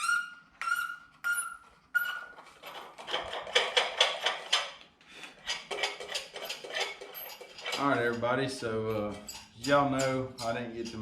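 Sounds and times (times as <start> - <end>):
metallic clicks and rattles: 2.6 - 8.3, 8.9 - 11.0
metal tools striking: 5.7 - 11.0.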